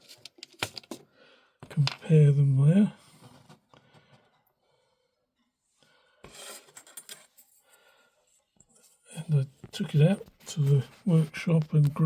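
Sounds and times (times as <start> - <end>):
small clicks and rustling: 0.0 - 1.0.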